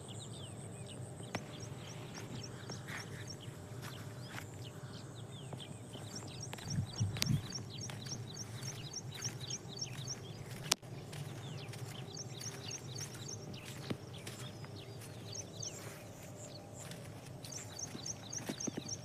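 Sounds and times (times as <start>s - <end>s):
bird chirping: 0.0s - 19.0s
steady low hum: 0.0s - 19.0s.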